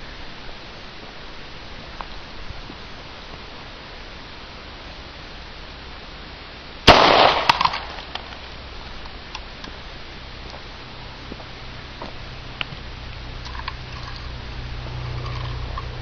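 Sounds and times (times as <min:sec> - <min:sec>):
gunshot: 0:06.9 - 0:08.2.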